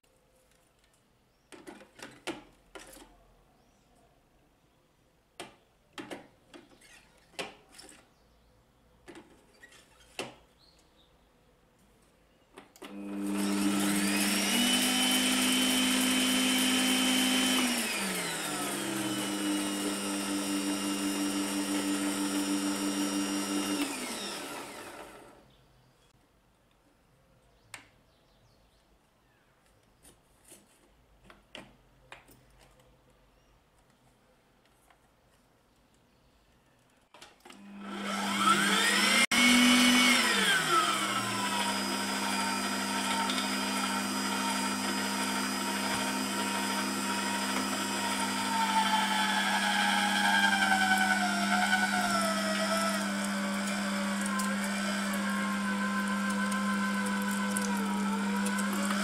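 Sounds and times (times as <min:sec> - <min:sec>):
meat mincer parts clicking: 0:50.2 - 0:59.0.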